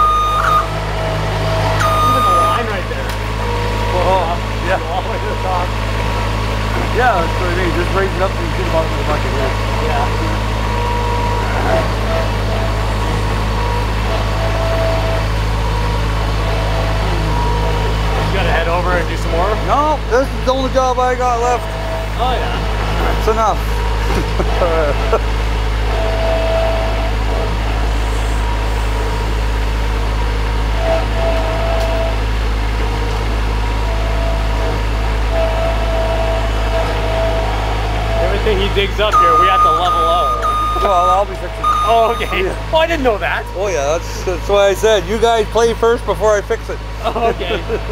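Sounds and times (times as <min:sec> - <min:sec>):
thin whine: 0:00.0 - 0:05.6, 0:33.6 - 0:44.5
loader engine running: 0:00.0 - 0:47.9.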